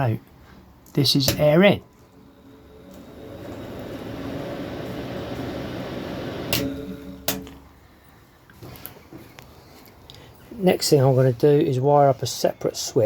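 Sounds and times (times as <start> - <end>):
fan running: 0.0 - 9.4.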